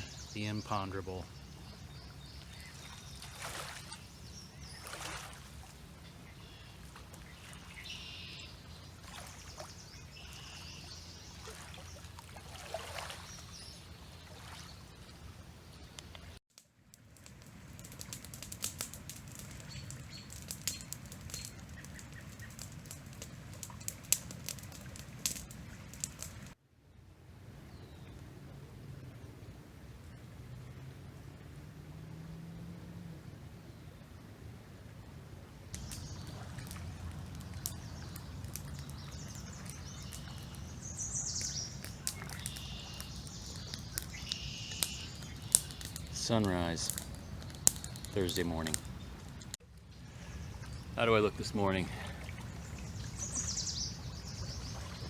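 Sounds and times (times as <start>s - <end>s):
river murmuring: 0.0s - 16.4s, 28.5s - 55.0s
songbirds chirping and trilling: 0.0s - 16.4s, 19.5s - 22.8s, 35.7s - 55.0s
faint bird chirps: 6.0s - 12.1s, 37.5s - 46.8s.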